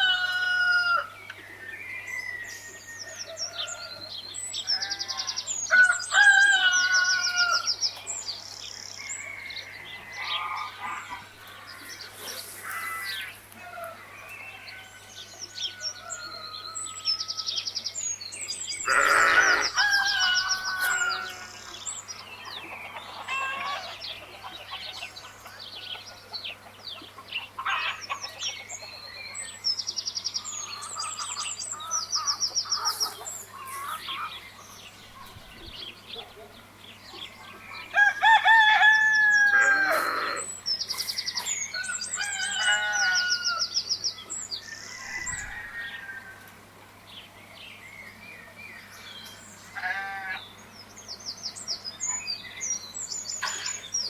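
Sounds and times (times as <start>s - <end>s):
rooster crowing: 0.0s - 1.2s, 2.1s - 7.8s, 18.9s - 21.8s, 37.9s - 40.5s, 41.4s - 43.7s, 44.6s - 46.6s
small birds chirping: 1.0s - 54.0s
chickens clucking: 20.5s - 29.4s, 30.8s - 38.1s.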